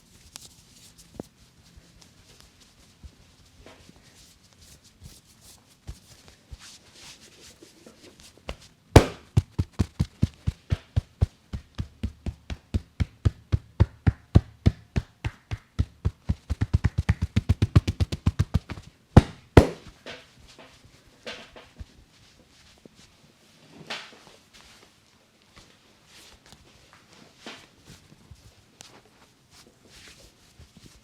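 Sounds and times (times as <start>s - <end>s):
hands rubbing hair and skin: 0.0s - 23.2s, 24.0s - 31.0s
rhythmic hand strikes on head: 9.0s - 19.9s.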